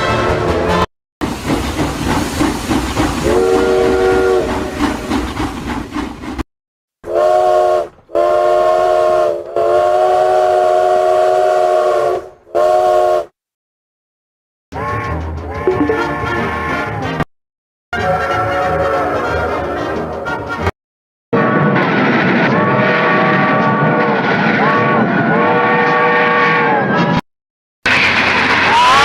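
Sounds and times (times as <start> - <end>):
train rumbling and hissing: 0.0 - 6.4, 7.1 - 13.3, 14.8 - 17.2, 18.0 - 20.7, 21.4 - 27.2, 27.9 - 29.0
train whistle blasts: 3.2 - 5.1, 7.0 - 13.4, 22.5 - 26.9.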